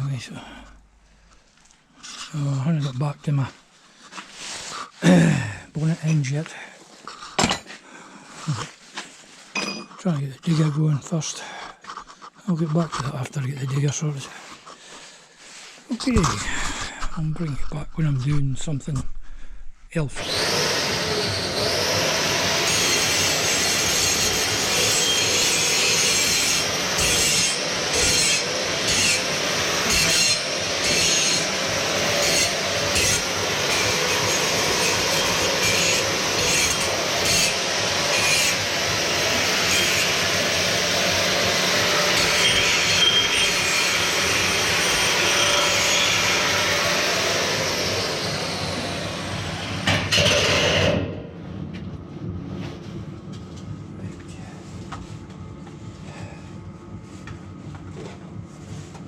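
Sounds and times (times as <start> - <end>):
angle grinder grinding steel: 20.1 - 51.0.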